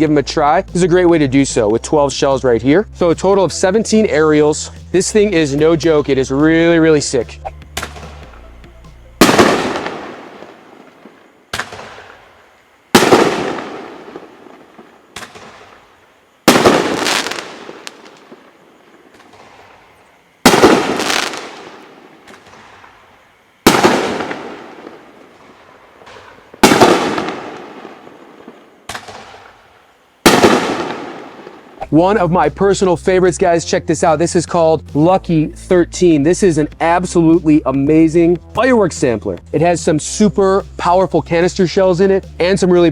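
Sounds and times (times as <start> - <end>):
firework shells bursting: 7.7 - 31.9
small firework pops: 7.8 - 8.3, 10.8 - 12.2, 13.0 - 15.9, 19.1 - 19.8, 22.2 - 23.0, 28.4 - 29.6.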